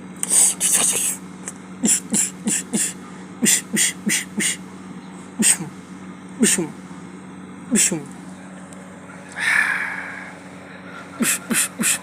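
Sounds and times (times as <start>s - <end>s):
steady low hum: 0.0s - 12.0s
person making breathy mouth noises: 0.2s - 1.2s, 1.8s - 4.6s, 5.4s - 5.8s, 6.4s - 6.8s, 9.3s - 10.4s, 11.2s - 12.0s.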